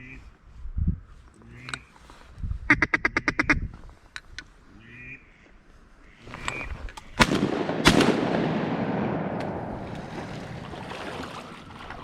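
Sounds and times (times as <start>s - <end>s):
shotgun shots: 7.2s - 10.1s.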